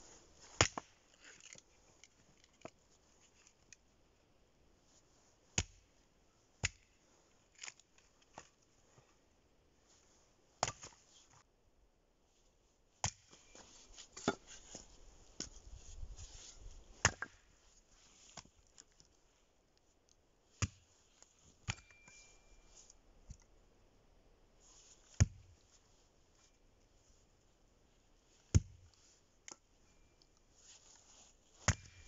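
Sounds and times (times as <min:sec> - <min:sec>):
axe chopping firewood: 0:00.6 - 0:01.0, 0:05.6 - 0:05.9, 0:06.6 - 0:06.9, 0:10.6 - 0:11.0, 0:13.0 - 0:13.4, 0:14.2 - 0:14.6, 0:17.0 - 0:17.4, 0:31.6 - 0:32.0.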